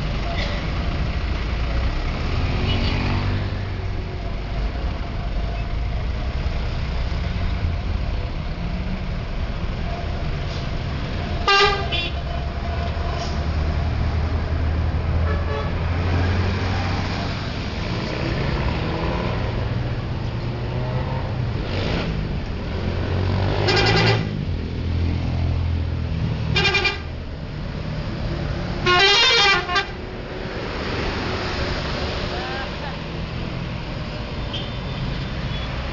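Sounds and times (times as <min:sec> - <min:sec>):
bus engine running: 0:00.0 - 0:20.5
multi-tone musical horn: 0:11.5 - 0:12.1, 0:28.8 - 0:29.9.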